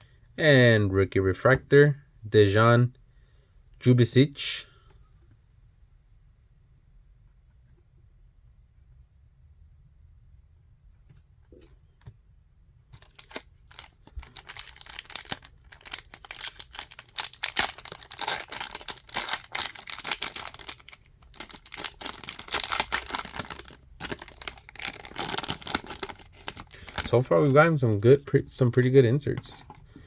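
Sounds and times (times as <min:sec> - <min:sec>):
foil wrapper crinkling and tearing: 0:13.0 - 0:29.8
cards being handled: 0:13.0 - 0:30.0.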